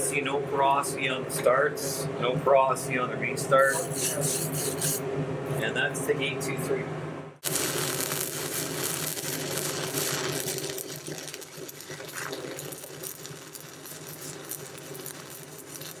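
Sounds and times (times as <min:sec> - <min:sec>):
welding arc crackling: 0:07.4 - 0:16.0.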